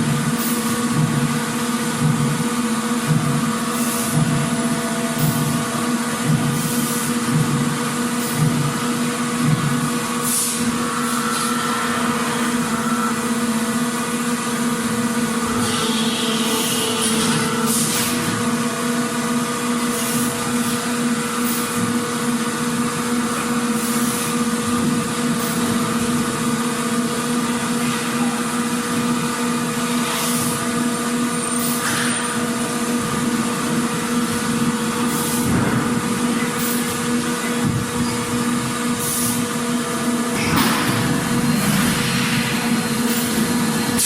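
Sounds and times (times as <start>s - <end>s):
machinery drone with hum: 0.0s - 44.0s.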